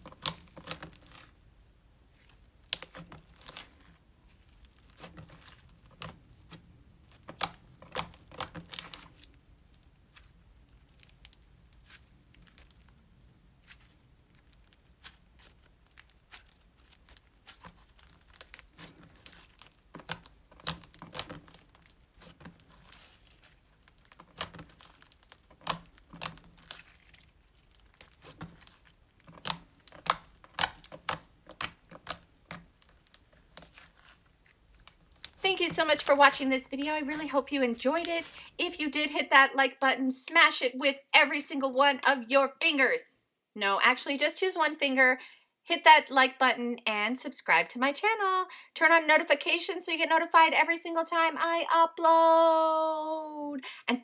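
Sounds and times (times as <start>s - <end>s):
slime squishing with sticky pops: 0.0s - 38.6s.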